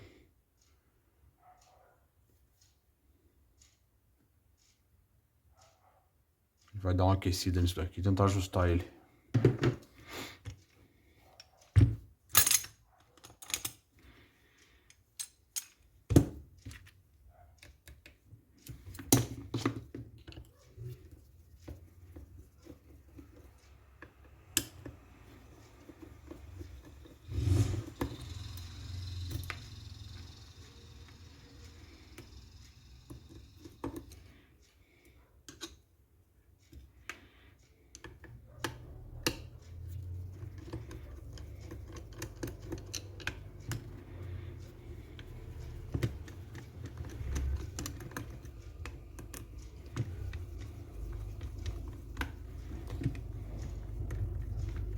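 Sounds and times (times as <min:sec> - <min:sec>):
clicks and knocks of tools: 0:11.4 - 0:17.0, 0:35.4 - 0:35.9, 0:36.6 - 0:54.9.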